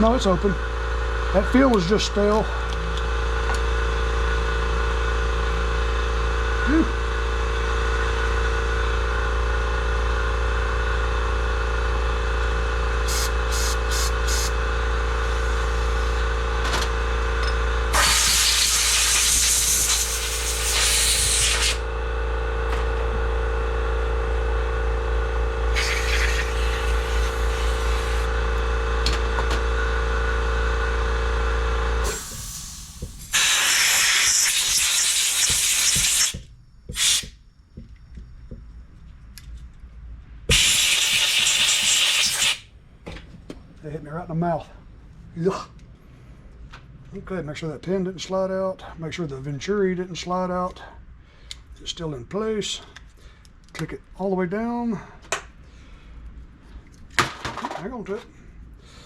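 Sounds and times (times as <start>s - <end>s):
steady motor hum: 0.0s - 48.1s
hissing bursts of spray: 13.1s - 14.6s, 17.9s - 21.8s, 25.7s - 28.3s, 32.0s - 37.4s, 40.5s - 42.7s.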